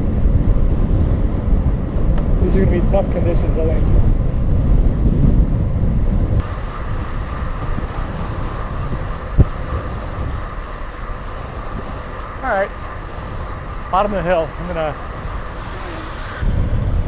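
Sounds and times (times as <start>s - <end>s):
bicycle road noise: 6.4s - 16.4s
steady mid-pitched hum: 6.4s - 16.4s
wind buffeting: 6.4s - 16.4s.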